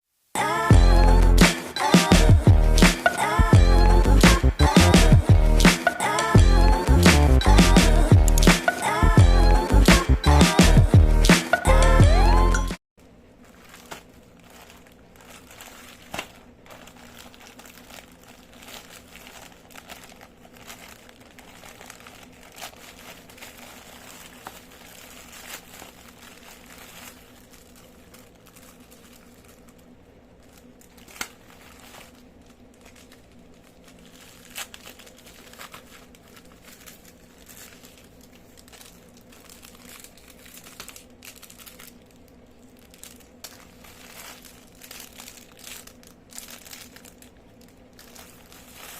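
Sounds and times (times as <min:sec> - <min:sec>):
packaging crinkling and rustling: 0:13.0 - 0:48.9.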